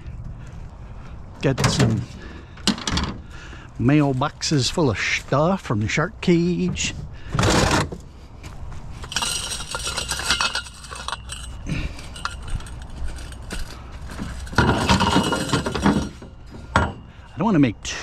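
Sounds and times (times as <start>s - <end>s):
metal scrap clinking and rattling: 9.0s - 17.3s.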